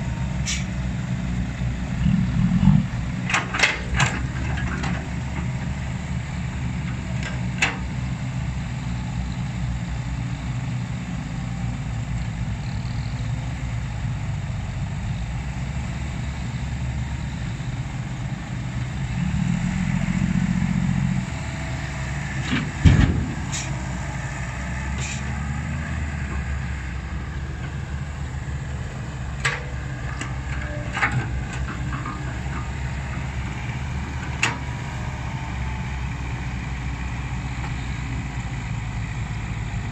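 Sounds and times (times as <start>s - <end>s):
excavator diesel engine running: 0.0s - 39.9s
sharp knocks and clanks: 22.4s - 23.7s.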